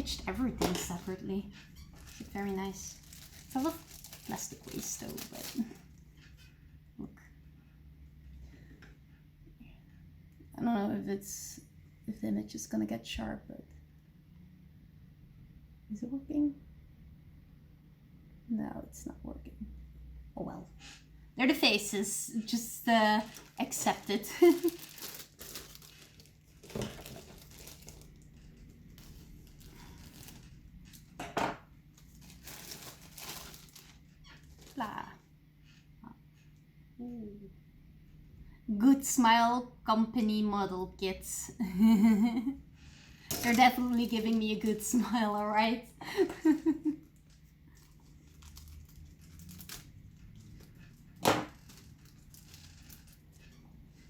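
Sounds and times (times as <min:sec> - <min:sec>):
plastic bags crinkling: 0:00.0 - 0:06.0, 0:22.5 - 0:31.1, 0:31.9 - 0:34.9, 0:43.2 - 0:45.6, 0:46.4 - 0:53.7
plastic packaging rustling: 0:00.0 - 0:06.0, 0:21.8 - 0:31.2, 0:31.9 - 0:35.0, 0:43.2 - 0:45.6, 0:46.4 - 0:54.0
loud plastic crackle: 0:01.8 - 0:06.0, 0:22.8 - 0:31.1, 0:31.9 - 0:34.9, 0:43.2 - 0:45.1, 0:47.2 - 0:53.6.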